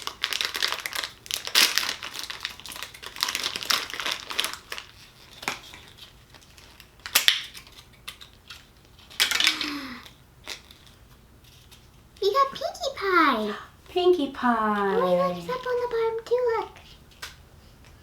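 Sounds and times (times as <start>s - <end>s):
plastic packaging crinkling and tearing: 0.0s - 12.0s.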